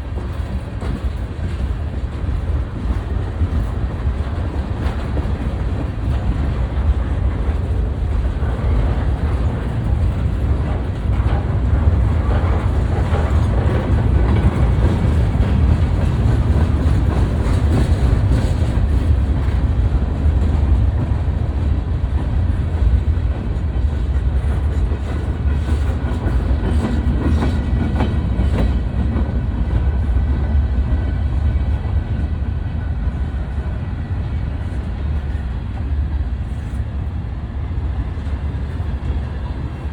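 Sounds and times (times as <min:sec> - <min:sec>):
wheels clacking over rail joints: 0:00.0 - 0:35.4
freight train rumbling past: 0:00.0 - 0:39.9.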